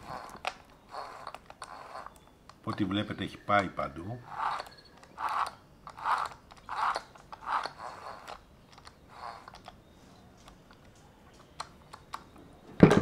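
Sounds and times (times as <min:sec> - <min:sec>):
saw chain rubbed between hands: 0:00.0 - 0:03.2, 0:04.2 - 0:08.4, 0:09.0 - 0:09.7.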